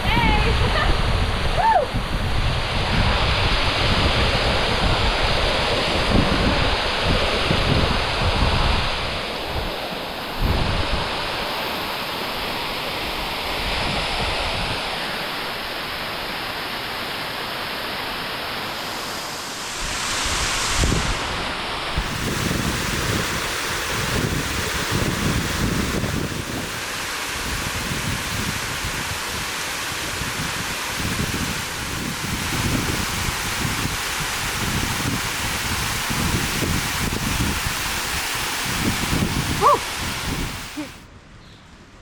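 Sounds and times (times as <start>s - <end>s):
wind buffeting microphone: 0.0s - 11.4s, 19.0s - 41.0s
waterfall rushing: 0.0s - 41.0s.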